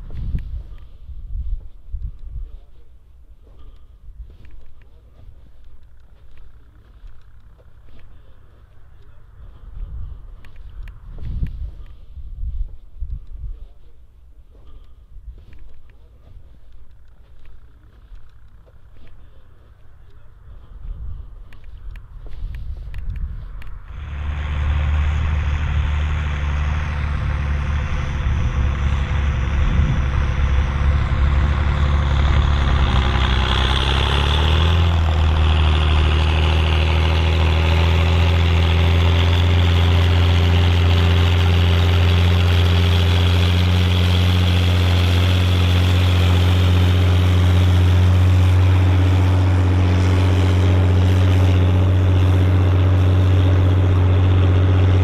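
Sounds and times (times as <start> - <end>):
tractor diesel engine running: 13.7 - 55.0.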